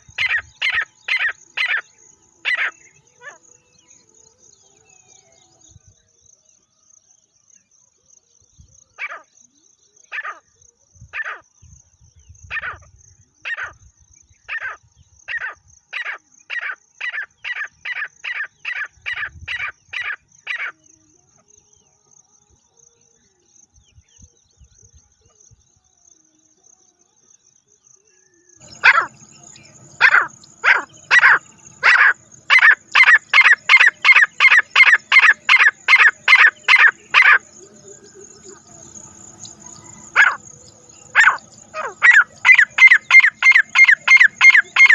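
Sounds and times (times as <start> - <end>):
francolin calling: 0.0 - 5.7, 28.6 - 44.9.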